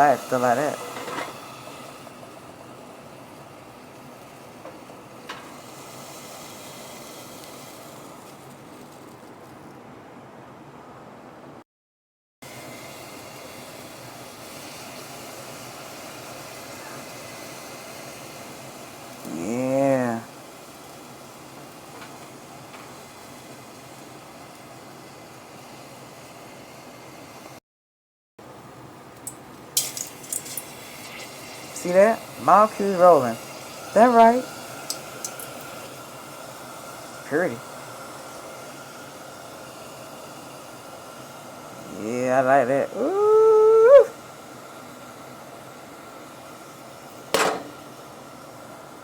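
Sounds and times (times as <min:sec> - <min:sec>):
low hiss: 0:00.0 - 0:08.4, 0:29.2 - 0:49.0
water drops sizzling on hot pot: 0:00.1 - 0:09.4, 0:12.5 - 0:26.3, 0:29.1 - 0:41.8.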